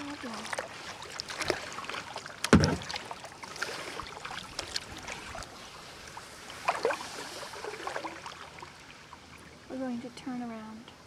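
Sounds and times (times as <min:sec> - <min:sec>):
paddle splashing water: 0:00.0 - 0:09.6
thump: 0:02.5 - 0:03.0.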